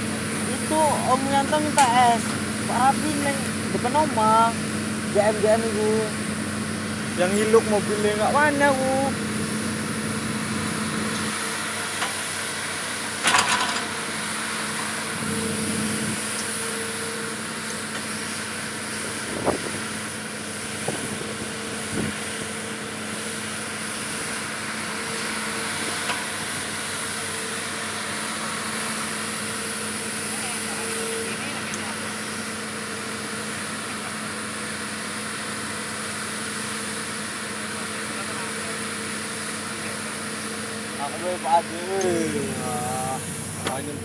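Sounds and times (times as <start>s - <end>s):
vehicle engine hum: 0.0s - 13.1s, 39.7s - 44.0s.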